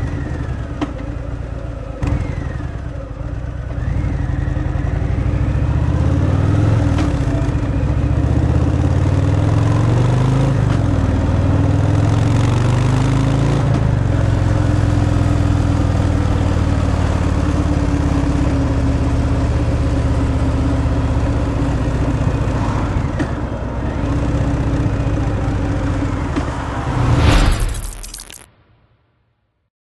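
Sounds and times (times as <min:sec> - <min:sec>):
motorcycle engine accelerating: 0:00.0 - 0:28.4.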